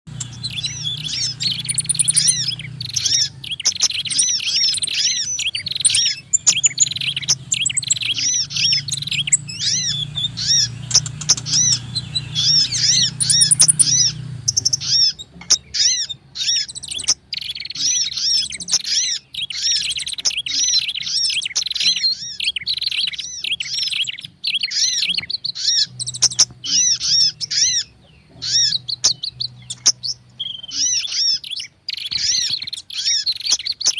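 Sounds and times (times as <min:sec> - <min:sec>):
songbirds chirping: 0:00.0 - 0:33.9
low hum: 0:00.1 - 0:17.1.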